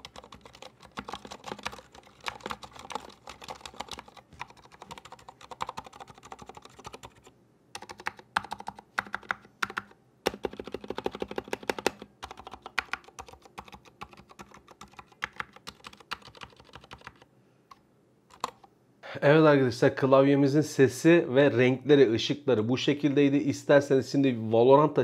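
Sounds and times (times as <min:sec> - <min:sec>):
mechanical keyboard typing: 0:00.0 - 0:17.3, 0:18.3 - 0:18.7.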